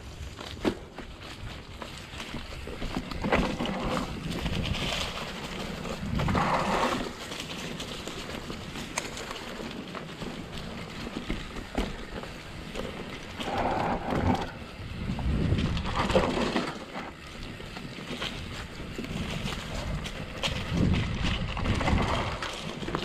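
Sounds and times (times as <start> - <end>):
bike rolling over dirt trail: 0.0 - 23.0
wind buffeting microphone: 13.6 - 16.3, 18.4 - 23.0.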